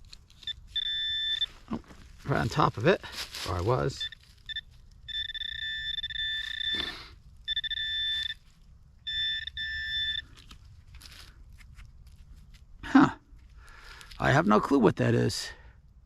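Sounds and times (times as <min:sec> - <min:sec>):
metal detector high-pitched tone: 0:00.4 - 0:01.6, 0:03.8 - 0:08.4, 0:09.0 - 0:10.4.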